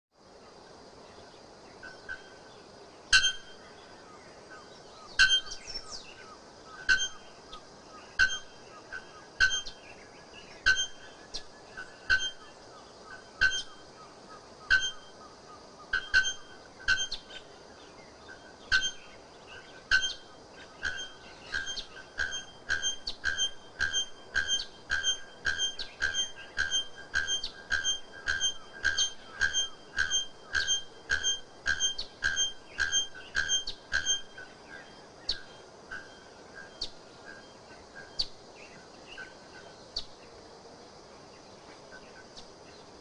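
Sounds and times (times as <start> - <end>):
bird calling metallic notes: 1.8 - 2.5, 3.1 - 3.8, 5.0 - 10.0, 10.6 - 17.5, 18.3 - 38.3.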